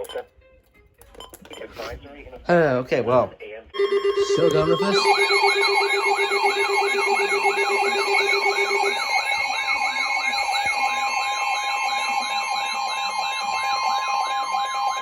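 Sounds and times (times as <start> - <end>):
electronic siren sweeping down: 3.8 - 15.0
high warbling tone: 3.8 - 15.0
steady alarm tone: 3.8 - 15.0.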